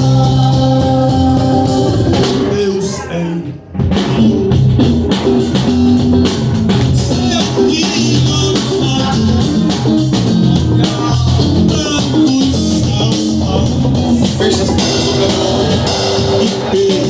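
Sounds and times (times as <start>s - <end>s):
bass: 0.0s - 17.0s
drum kit beat: 0.0s - 17.0s
guitar: 0.0s - 17.0s.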